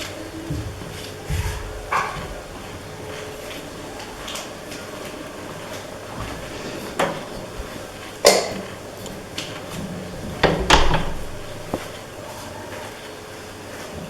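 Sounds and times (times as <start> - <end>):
cupboard doors and drawers knocking: 10.0 - 11.9.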